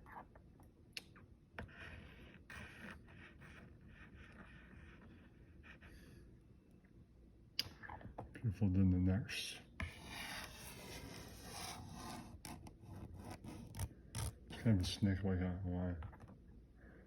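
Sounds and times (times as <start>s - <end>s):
drawing tool scratching paper: 1.6s - 6.0s, 9.8s - 14.9s.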